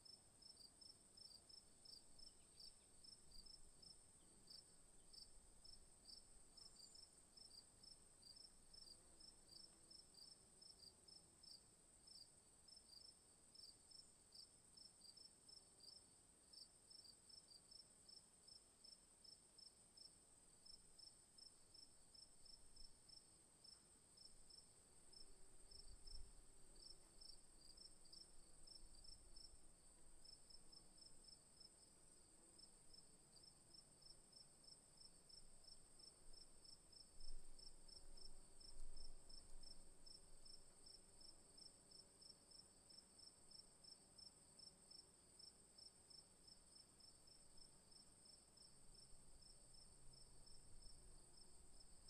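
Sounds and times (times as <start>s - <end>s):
night insects droning: 0.0s - 52.0s
crickets chirping: 20.0s - 52.0s.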